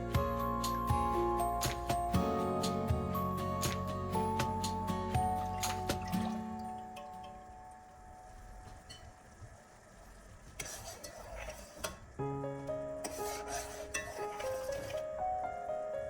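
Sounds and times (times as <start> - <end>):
background music: 0.0 - 9.9.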